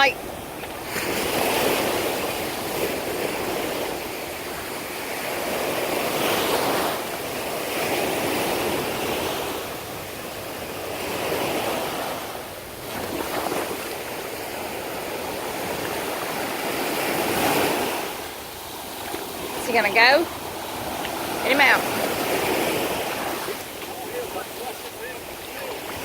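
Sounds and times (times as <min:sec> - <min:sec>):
ocean surf washing in: 0:00.0 - 0:26.0.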